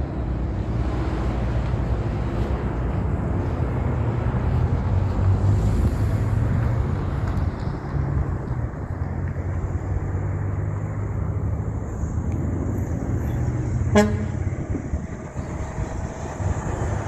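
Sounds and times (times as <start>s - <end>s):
truck diesel engine droning: 0.0s - 17.0s
truck horn toot: 13.2s - 15.0s.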